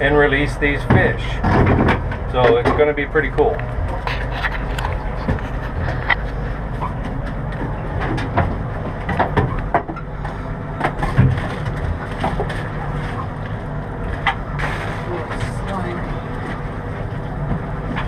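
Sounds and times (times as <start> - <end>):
steady low hum: 0.0 - 18.0
knocks and clatter: 0.8 - 13.2.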